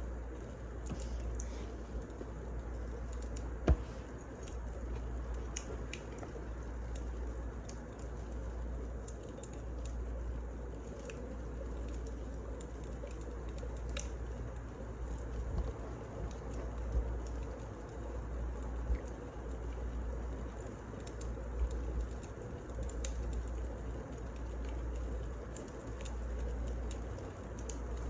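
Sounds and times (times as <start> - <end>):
wood fire crackling: 0.0 - 28.0.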